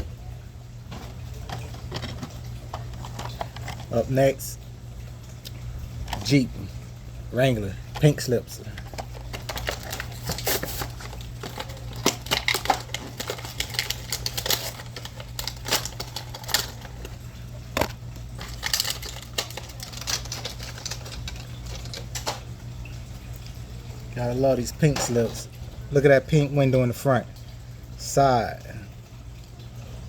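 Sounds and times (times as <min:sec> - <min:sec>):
steady low hum: 0:00.0 - 0:30.0
plastic packaging crinkling and tearing: 0:01.3 - 0:04.0, 0:08.7 - 0:22.4.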